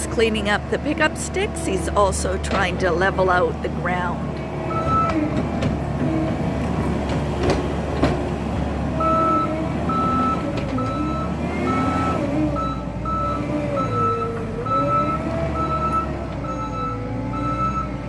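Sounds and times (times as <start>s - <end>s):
skid steer engine working: 0.0s - 18.0s
reversing alarm beeping: 4.7s - 5.2s, 9.0s - 18.0s.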